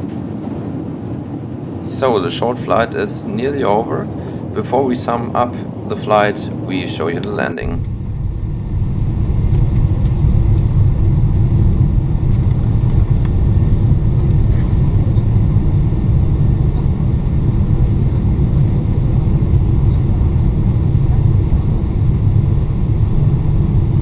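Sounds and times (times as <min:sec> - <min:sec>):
airplane cabin engine rumble: 0:00.0 - 0:24.0.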